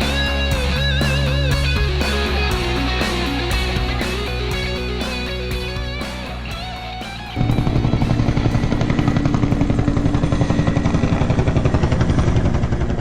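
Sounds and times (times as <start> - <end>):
heavy rock music: 0.0 - 11.6.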